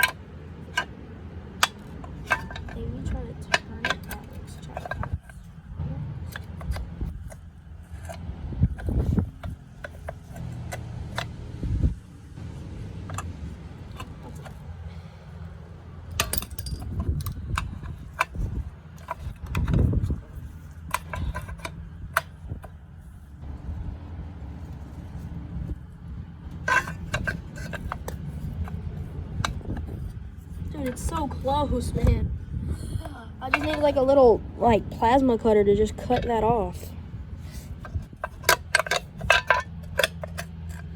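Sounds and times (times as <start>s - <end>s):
metal tools clinking and scraping: 0.0s - 5.6s, 6.2s - 11.4s, 12.8s - 23.3s, 24.4s - 31.4s, 33.4s - 40.9s
steady low hum: 0.0s - 40.9s.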